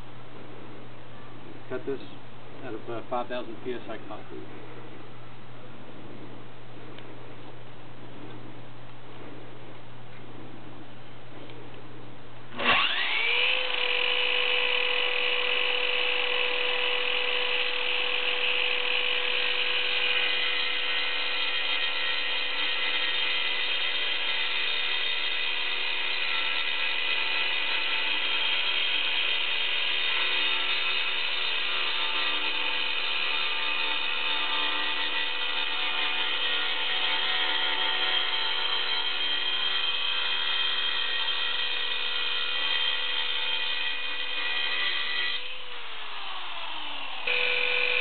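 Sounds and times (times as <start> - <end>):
circular saw cutting concrete: 12.6 - 48.0.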